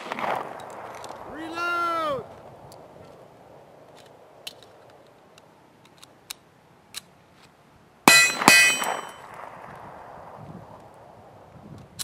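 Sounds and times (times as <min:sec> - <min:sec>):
metallic clang of steel target: 0:08.1 - 0:09.3.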